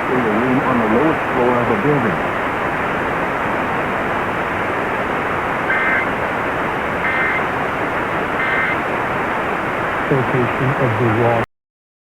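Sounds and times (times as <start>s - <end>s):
radio hiss and static: 0.0s - 2.4s, 5.6s - 11.5s
two-tone electronic data bursts: 5.7s - 6.1s, 7.0s - 7.5s, 8.4s - 8.8s.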